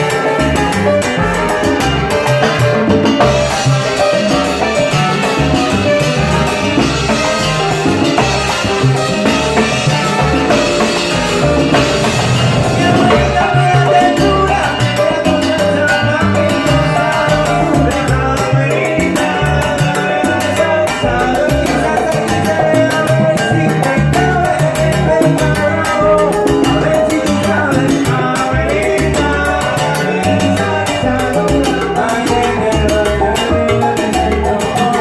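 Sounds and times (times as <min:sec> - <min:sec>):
horns: 0:00.0 - 0:15.2, 0:16.0 - 0:18.5
percussion: 0:00.0 - 0:35.0
rhythmic bass: 0:00.0 - 0:35.0.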